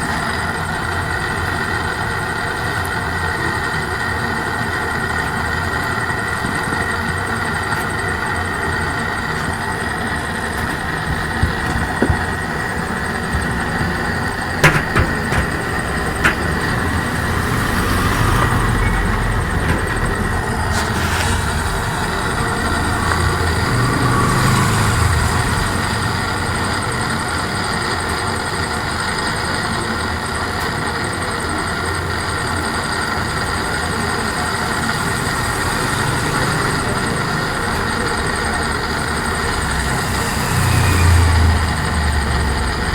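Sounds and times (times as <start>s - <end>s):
gas torch roaring: 0.0s - 42.9s
sharp metal knocks: 10.8s - 18.4s.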